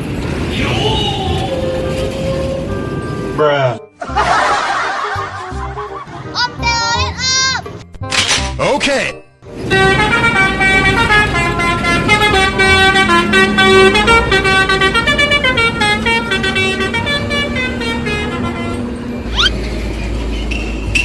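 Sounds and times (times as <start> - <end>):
multi-trumpet air horn tune: 9.7 - 18.8.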